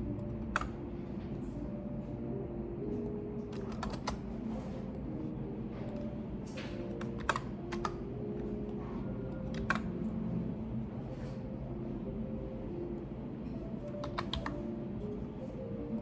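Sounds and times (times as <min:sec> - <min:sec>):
low room hum: 0:00.0 - 0:16.0
computer keyboard keystrokes: 0:00.1 - 0:00.8, 0:03.4 - 0:04.3, 0:05.9 - 0:10.1, 0:13.9 - 0:14.7.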